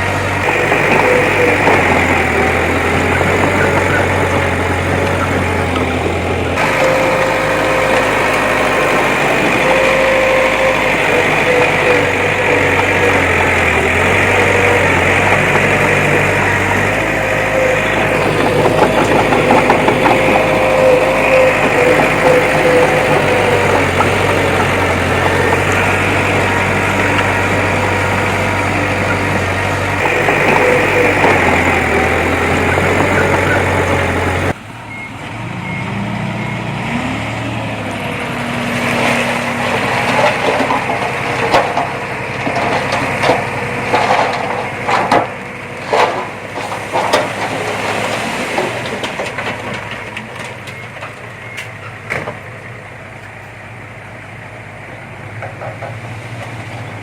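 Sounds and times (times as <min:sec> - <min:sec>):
rising engine whine: 0:00.0 - 0:51.6
diesel machinery running: 0:00.0 - 0:57.0
metal clanks and knocks: 0:39.6 - 0:52.4.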